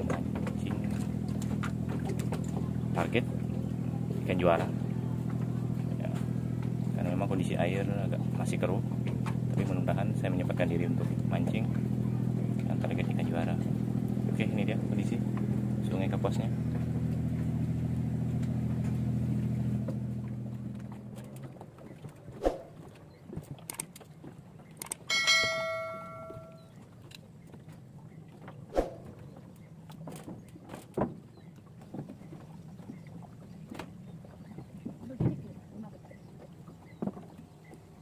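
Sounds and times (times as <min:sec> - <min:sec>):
metallic ring: 0:25.1 - 0:26.8.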